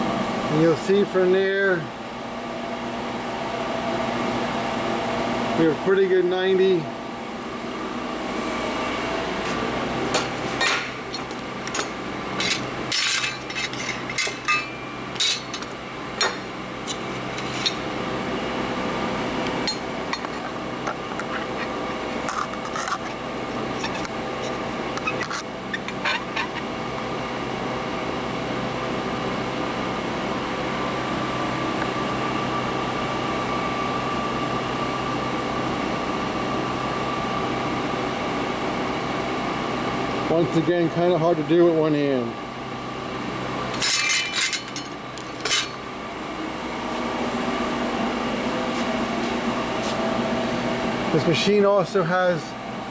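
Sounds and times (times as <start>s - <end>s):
sheet metal clinks and knocks: 43.8s - 45.8s.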